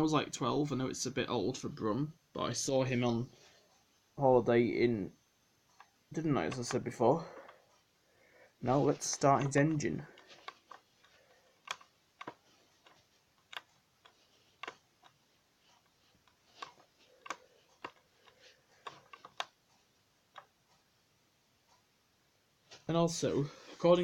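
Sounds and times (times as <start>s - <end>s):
plastic toy clicks and taps: 5.8s - 7.5s, 9.1s - 15.2s, 16.3s - 19.6s.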